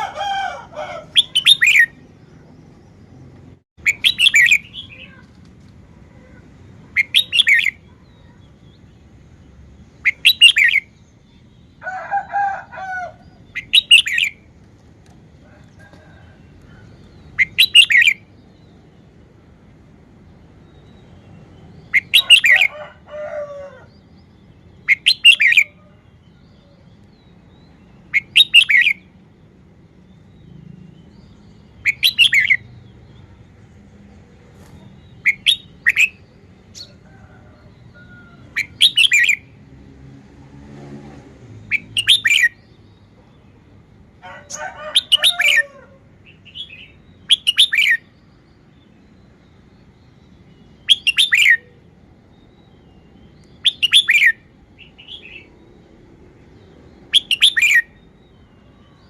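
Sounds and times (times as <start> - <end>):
bird singing high-pitched phrases: 1.1 - 2.6, 3.8 - 5.3, 6.1 - 9.2, 9.8 - 11.8, 13.4 - 14.5, 17.0 - 19.2, 20.5 - 22.7, 24.0 - 29.2, 30.1 - 33.4, 34.8 - 36.6, 46.3 - 55.7, 56.6 - 59.0.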